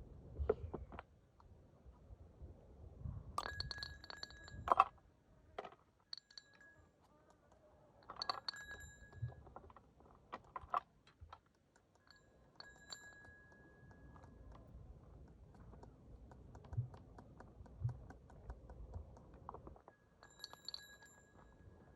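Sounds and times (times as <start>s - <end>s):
metal tools clinking: 8.0s - 9.8s.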